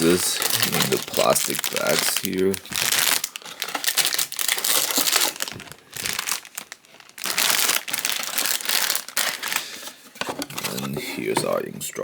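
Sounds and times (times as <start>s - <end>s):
plastic bags crinkling: 0.0s - 11.6s.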